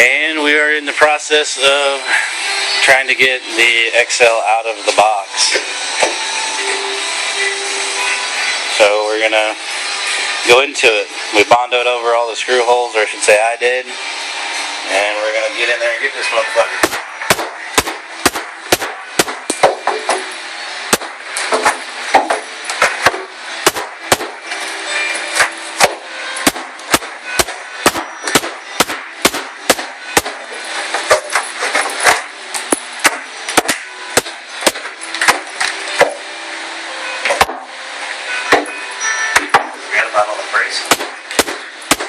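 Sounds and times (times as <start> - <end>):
sharp blows on wooden box: 16.8 - 20.0, 20.9 - 22.4, 23.0 - 24.4, 25.8 - 30.4, 33.0 - 35.4, 40.9 - 42.0.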